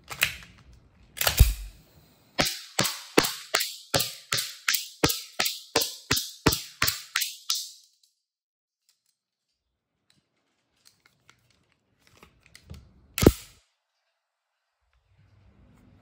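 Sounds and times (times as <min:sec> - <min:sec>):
airsoft pistol shot: 0:01.2 - 0:01.8, 0:02.4 - 0:07.2, 0:13.2 - 0:13.6
pistol handling clicks: 0:01.2 - 0:01.8.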